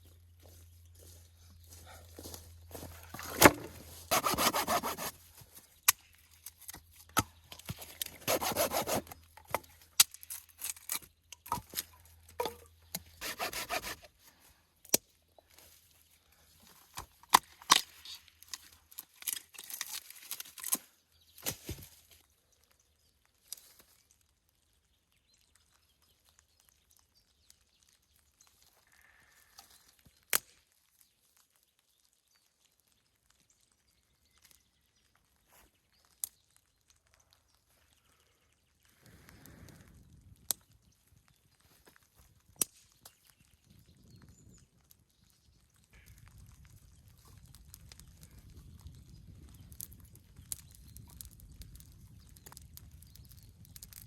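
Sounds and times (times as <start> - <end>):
branches snapping and cracking: 2.2 - 14.0, 16.6 - 22.3, 23.4 - 24.2, 28.5 - 31.5, 41.6 - 43.5, 45.9 - 54.0
rasping strokes on wood: 4.1 - 5.1, 8.2 - 9.1, 13.2 - 14.1.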